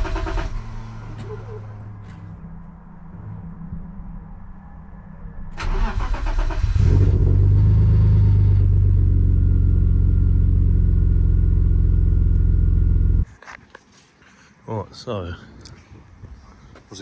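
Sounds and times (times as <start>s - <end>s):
engine cranking and starting: 0.0s - 1.6s, 5.6s - 7.3s.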